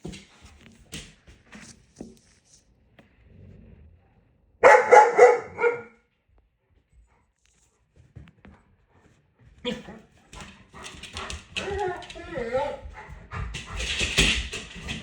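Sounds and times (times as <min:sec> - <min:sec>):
dog barking excitedly: 0:04.6 - 0:06.0
faint clicks and shuffling: 0:06.1 - 0:15.0.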